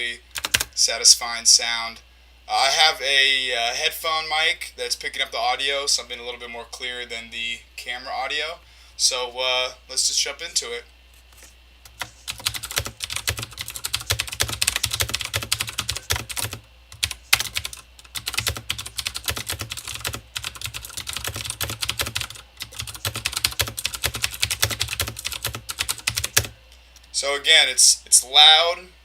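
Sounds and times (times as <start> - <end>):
mechanical keyboard typing clicks: 0.4 - 0.7, 11.9 - 26.5.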